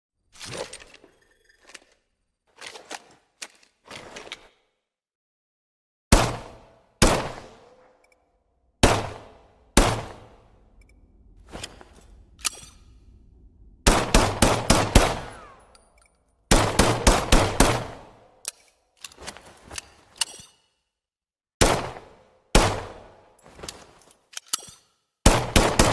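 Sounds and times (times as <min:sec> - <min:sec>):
pistol shots: 0:06.1 - 0:07.7, 0:08.8 - 0:10.4, 0:13.9 - 0:15.6, 0:16.5 - 0:18.2, 0:25.3 - 0:25.9.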